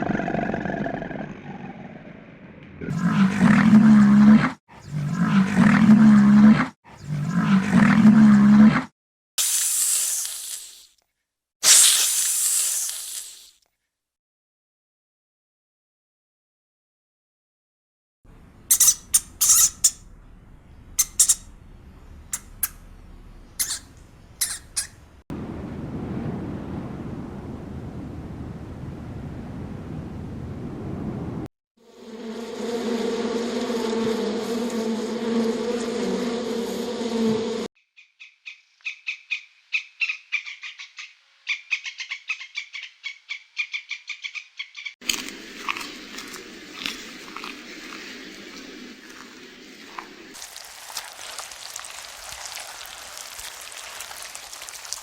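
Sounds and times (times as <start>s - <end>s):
big cat roaring: 0.0s - 8.9s
small animal squeaks: 18.7s - 20.1s, 20.9s - 21.6s, 22.3s - 22.9s, 23.5s - 25.0s.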